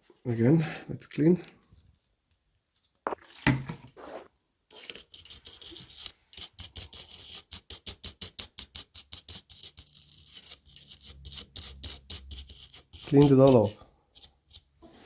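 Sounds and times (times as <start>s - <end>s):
scrubbing on circuit board: 4.0s - 15.0s.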